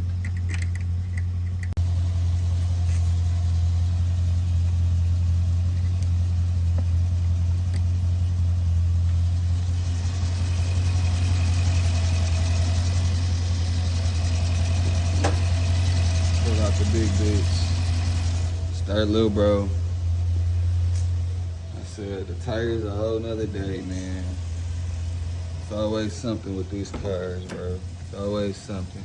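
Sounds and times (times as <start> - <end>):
car engine idling: 0.0 - 29.0.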